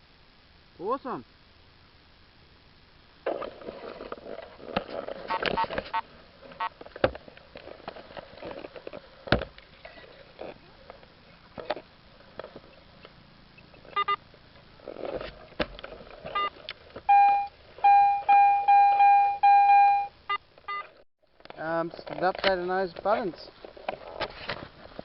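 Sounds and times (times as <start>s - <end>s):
metal detector beeps: 13.6s - 14.2s, 16.3s - 16.5s, 17.1s - 20.9s
metal detector chirps: 16.3s - 20.9s.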